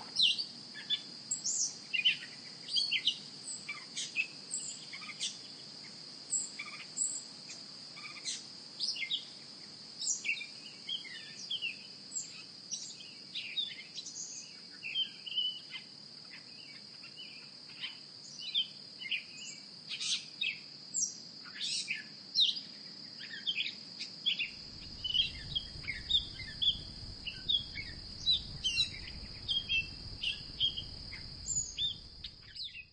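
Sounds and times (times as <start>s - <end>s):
birds chirping: 24.3s - 32.9s
high-pitched insect drone: 24.3s - 32.9s
low rumble: 24.6s - 32.9s.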